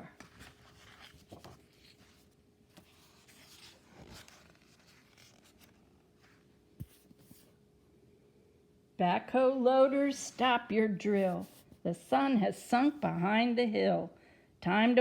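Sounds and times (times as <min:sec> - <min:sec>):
book pages rustling: 0:00.0 - 0:07.6, 0:11.1 - 0:11.8.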